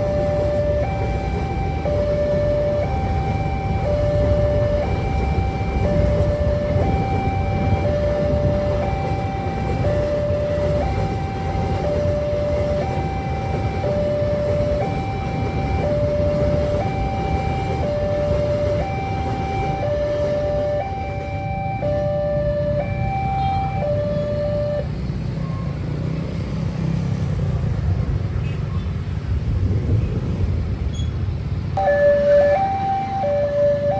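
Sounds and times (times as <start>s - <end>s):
two-tone level crossing siren: 0.0s - 25.8s, 31.8s - 33.9s.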